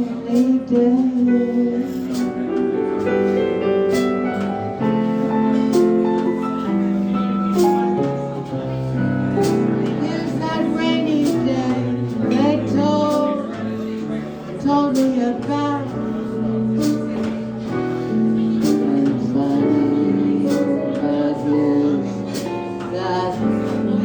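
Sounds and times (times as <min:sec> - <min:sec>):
woman singing with vibrato: 0:00.0 - 0:02.4, 0:09.9 - 0:13.5, 0:18.3 - 0:24.0
guitar: 0:00.0 - 0:24.0
piano: 0:00.0 - 0:24.0.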